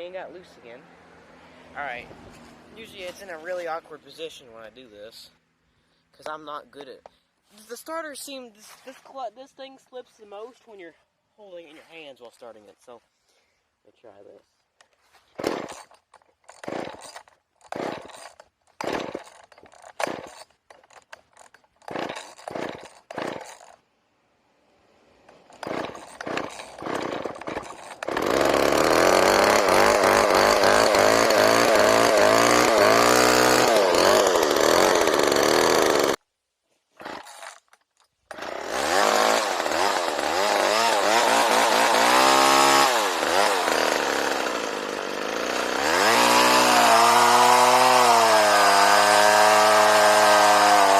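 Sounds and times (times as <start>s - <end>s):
starter rope pulls: 14.8s - 23.8s, 25.3s - 36.2s, 36.9s - 50.9s
chainsaw engine revving: 15.3s - 23.8s, 25.3s - 36.2s, 37.0s - 37.6s, 38.3s - 50.9s.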